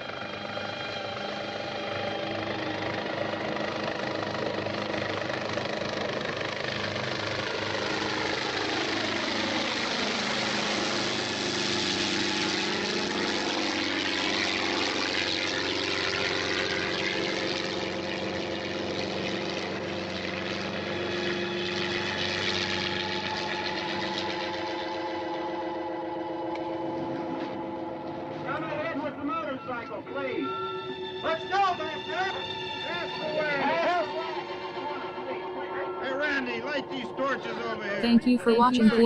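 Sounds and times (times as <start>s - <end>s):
steady engine drone: 0.0s - 39.0s.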